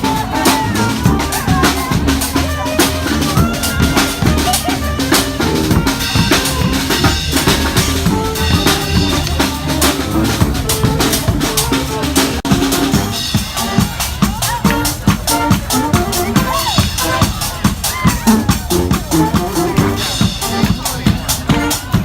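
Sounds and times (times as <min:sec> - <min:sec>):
bass drum and snare beating: 0:00.0 - 0:22.0
marching brass band: 0:00.0 - 0:22.0.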